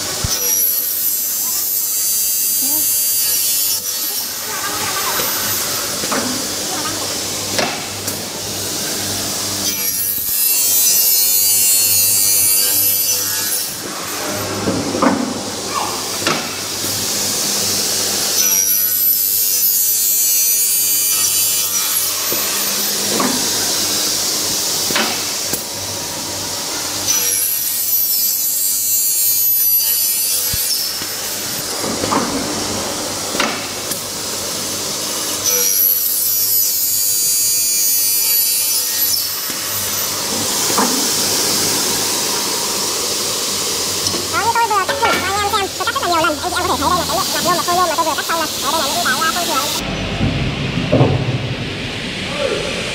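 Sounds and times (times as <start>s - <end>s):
saw blade screeching through metal: 9.6s - 14.4s, 18.3s - 22.6s, 35.4s - 40.2s
saw motor running: 43.5s - 49.8s.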